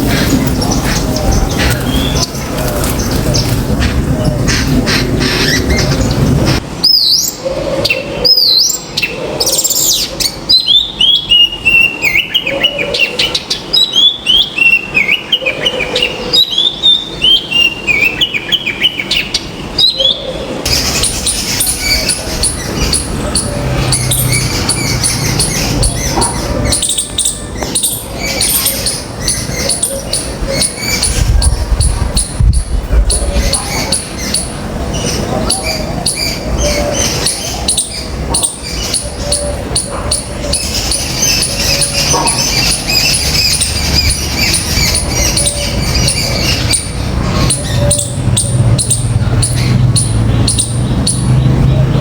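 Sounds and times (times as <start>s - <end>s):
low rumbles: 0.0s - 6.9s, 20.6s - 52.0s
dense bird chatter: 0.0s - 52.0s
downward-sweeping bird chirps: 6.8s - 51.5s.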